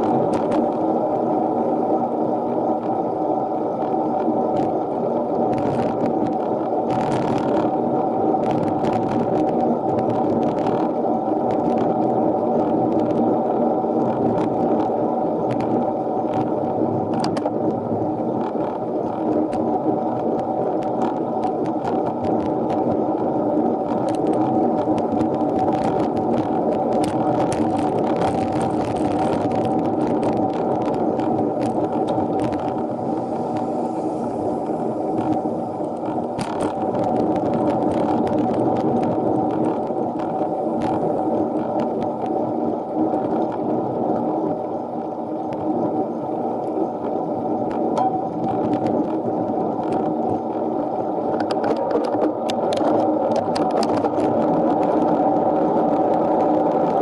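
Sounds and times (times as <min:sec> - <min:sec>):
muffled bicycle riding rumble: 0:00.0 - 0:57.0
small knocks and clicks: 0:51.3 - 0:54.3.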